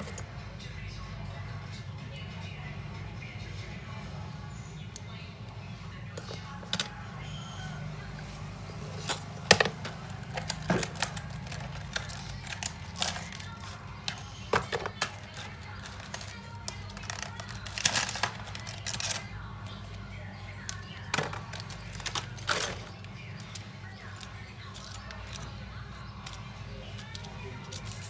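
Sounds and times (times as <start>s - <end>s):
small tools clicking and tapping: 0.0s - 0.3s, 6.2s - 7.4s, 8.6s - 20.0s, 20.6s - 28.0s
low background music: 0.0s - 28.0s.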